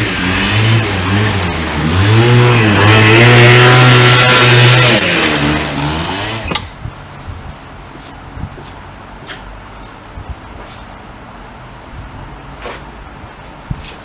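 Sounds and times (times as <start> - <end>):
scooter engine revving: 0.0 - 6.8.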